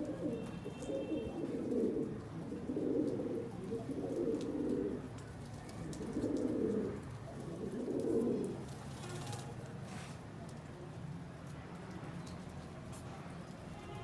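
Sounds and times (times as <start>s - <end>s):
pigeons cooing: 1.4s - 5.1s, 5.8s - 8.6s.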